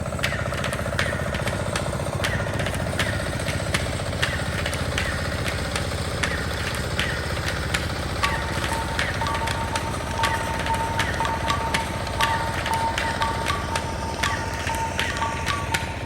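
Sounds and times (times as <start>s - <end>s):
sharp ticks: 0.0s - 16.0s
small engine idling: 0.0s - 16.0s.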